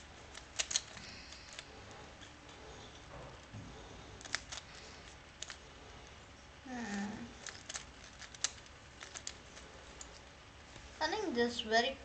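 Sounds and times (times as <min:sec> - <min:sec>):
puzzle cube clicks: 0:00.3 - 0:02.3, 0:04.2 - 0:05.6, 0:06.9 - 0:10.2.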